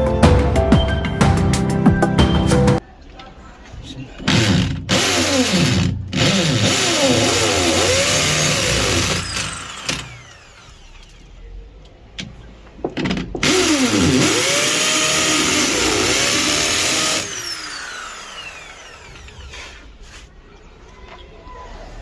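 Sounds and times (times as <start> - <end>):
power tool motor under load: 4.3 - 11.2, 13.4 - 19.9
motor winding down whine: 4.3 - 11.3, 13.4 - 19.6.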